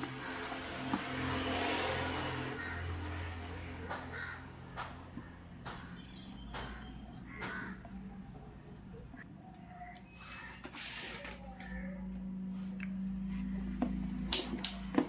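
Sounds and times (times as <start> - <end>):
passing vehicle: 0.0 - 9.2.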